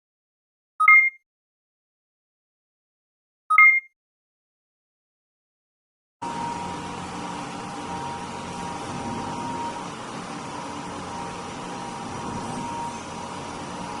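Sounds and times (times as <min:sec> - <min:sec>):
industrial machine humming: 0:06.2 - 0:14.0.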